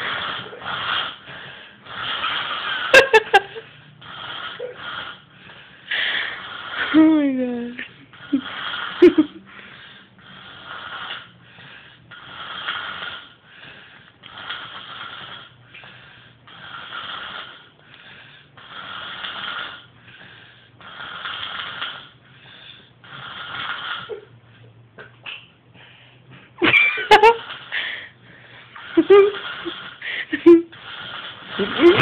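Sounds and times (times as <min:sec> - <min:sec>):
faint breath: 0:08.2 - 0:24.8, 0:25.7 - 0:26.6, 0:27.6 - 0:32.0.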